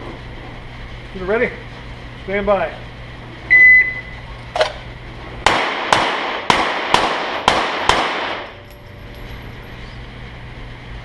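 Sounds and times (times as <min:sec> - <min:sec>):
pistol shots: 0:05.4 - 0:08.6.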